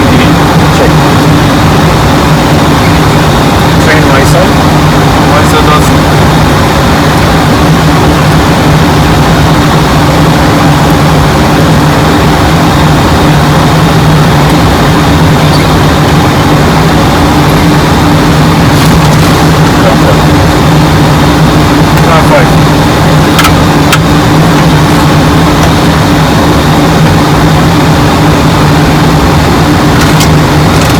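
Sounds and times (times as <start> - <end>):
constant low hum: 0.0 - 30.9
jet engine and airflow drone: 0.0 - 30.9.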